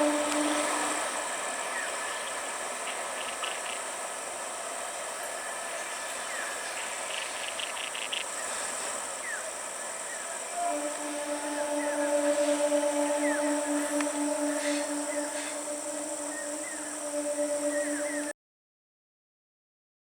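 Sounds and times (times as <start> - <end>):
train horn: 0.0 - 2.7, 10.5 - 18.3
steady hiss: 0.0 - 9.2
high insect drone: 0.0 - 18.3.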